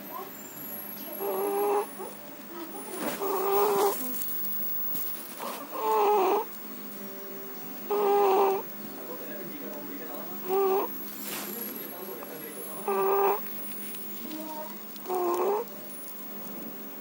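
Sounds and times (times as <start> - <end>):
animal snoring: 1.0 - 6.6, 7.8 - 8.7, 10.2 - 11.6, 12.4 - 15.9.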